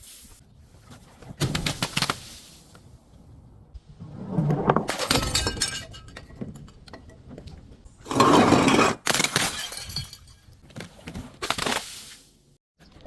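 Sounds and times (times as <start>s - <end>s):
glass bottle breaking: 9.0s - 10.6s.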